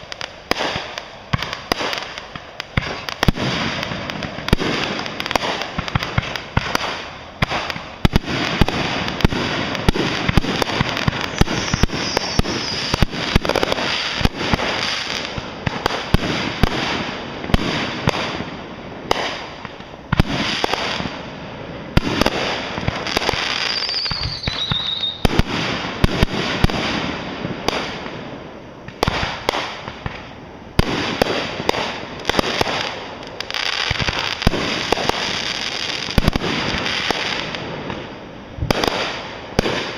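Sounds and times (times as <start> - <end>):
fireworks bangs: 0.0 - 39.9
fireworks crackling: 0.0 - 39.9
falling whistle: 11.4 - 13.0, 23.7 - 25.2.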